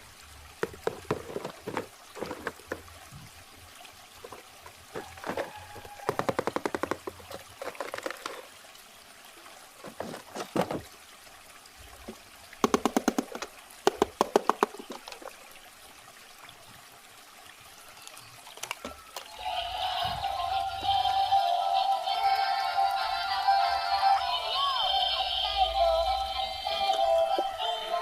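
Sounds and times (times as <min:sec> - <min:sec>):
water pouring and glugging: 0:00.0 - 0:16.8, 0:17.8 - 0:22.4
water trickling: 0:00.0 - 0:28.0.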